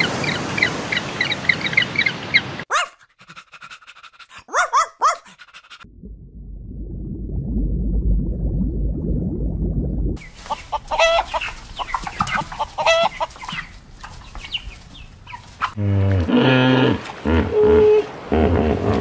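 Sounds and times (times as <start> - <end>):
loud deep pitched sound: 5.9 - 10.2
low rumbling noise: 5.9 - 10.3
chickens clucking: 10.2 - 15.8.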